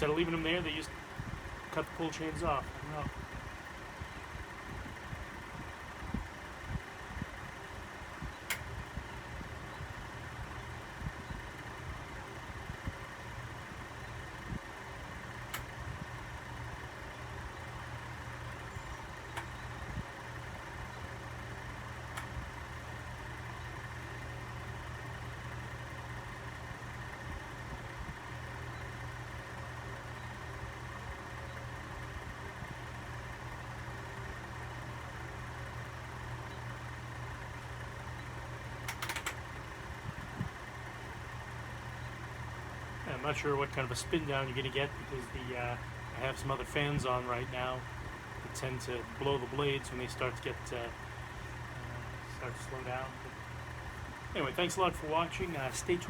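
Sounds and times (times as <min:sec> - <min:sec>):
ceiling fan running: 0:00.0 - 0:56.0
faint clicks: 0:38.8 - 0:39.4.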